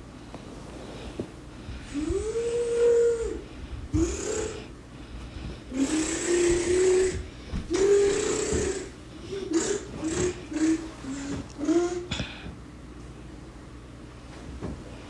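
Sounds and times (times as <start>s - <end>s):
person groaning: 4.0s - 4.7s, 5.7s - 12.5s.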